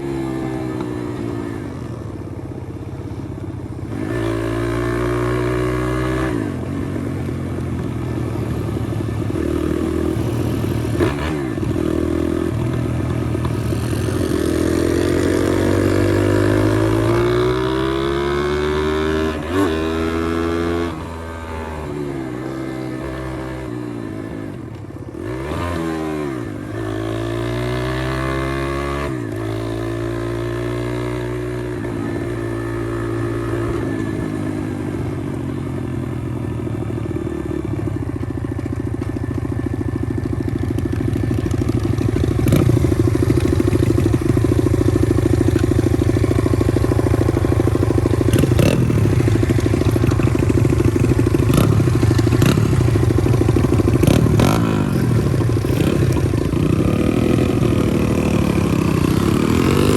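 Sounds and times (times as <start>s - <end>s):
pit bike engine revving: 3.9s - 7.2s, 8.4s - 24.4s, 40.7s - 59.9s.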